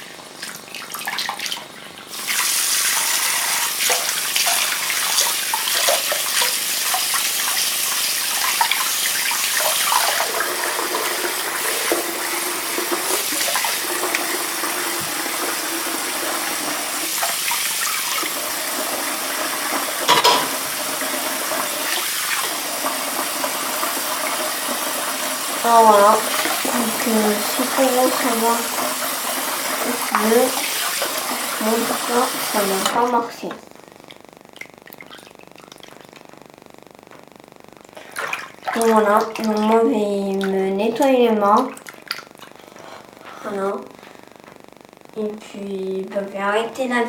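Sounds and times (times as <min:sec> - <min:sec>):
tap water running into sink: 0:00.4 - 0:33.1.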